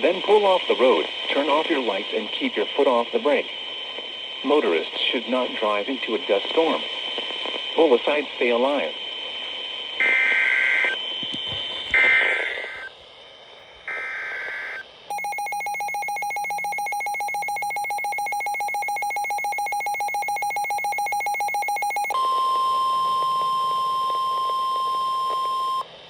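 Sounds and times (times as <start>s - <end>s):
steady warning alarm tone: 13.9s - 22.2s.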